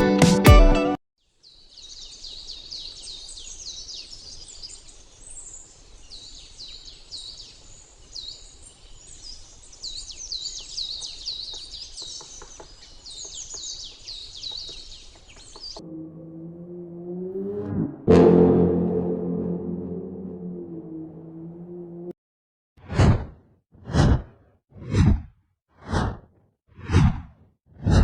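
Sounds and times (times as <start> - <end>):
birds chirping: 1.4 - 17.6.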